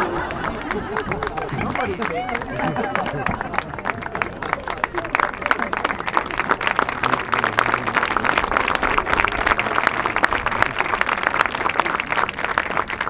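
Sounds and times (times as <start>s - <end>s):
crowd applauding: 0.0s - 13.0s.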